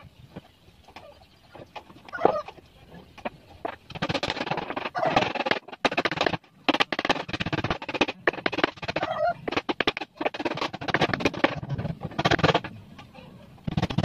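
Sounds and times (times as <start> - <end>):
chickens clucking: 0.4 - 3.9, 4.9 - 5.2, 8.9 - 9.6.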